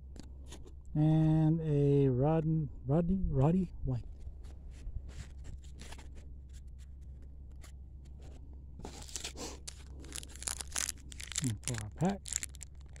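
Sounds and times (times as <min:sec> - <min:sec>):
steady low hum: 0:00.0 - 0:13.0
wrapper rustling: 0:08.9 - 0:13.0.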